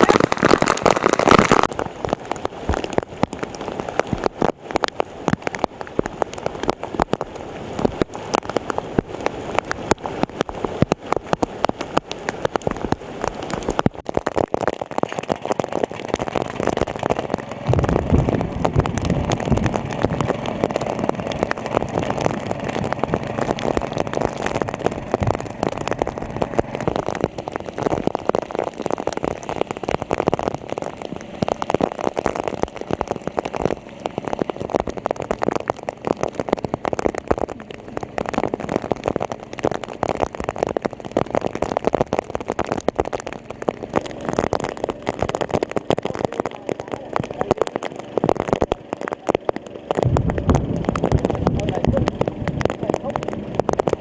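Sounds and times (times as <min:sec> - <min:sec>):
steady rain: 0:00.0 - 0:54.0
water pump engine rumble: 0:00.0 - 0:54.0.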